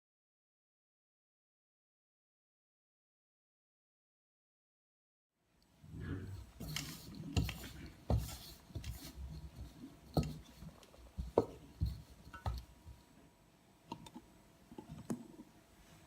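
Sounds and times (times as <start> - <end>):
hands kneading dough: 5.9 - 13.2.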